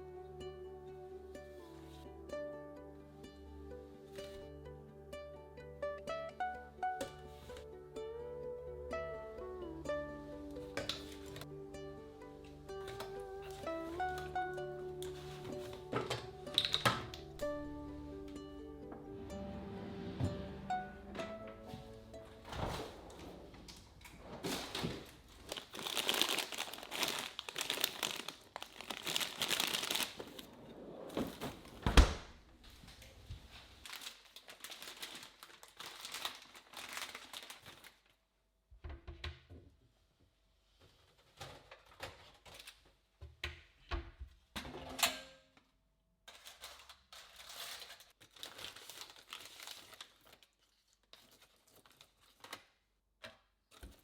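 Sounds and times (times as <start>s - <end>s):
packaging crinkling and tearing: 24.5s - 30.5s, 33.6s - 38.2s, 41.8s - 42.8s, 46.3s - 52.8s.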